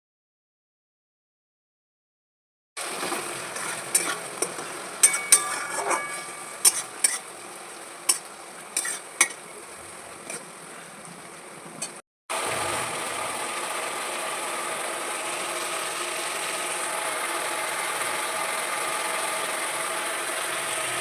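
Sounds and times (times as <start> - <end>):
chicken sizzling in a pan: 2.8 - 10.6, 12.3 - 21.0
utensil clinking against pan: 5.0 - 7.2.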